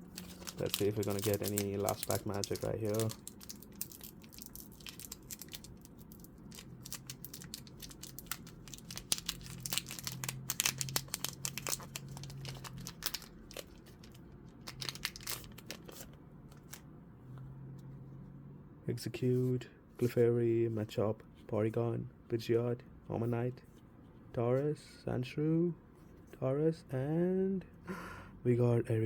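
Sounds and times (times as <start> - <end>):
foil pack tearing and crinkling: 0.0 - 16.1.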